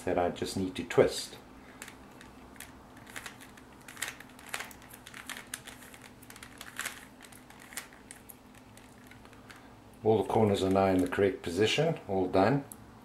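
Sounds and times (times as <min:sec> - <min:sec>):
puzzle cube clicking and rattling: 0:01.8 - 0:09.6.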